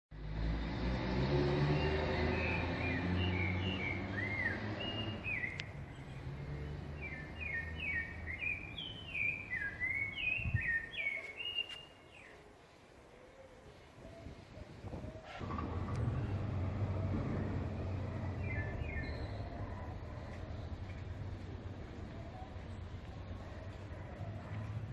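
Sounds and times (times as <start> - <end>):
passing motor vehicle rumble: 0.1 - 10.7, 14.2 - 24.9
small birds chirping: 1.7 - 15.2, 16.0 - 24.9.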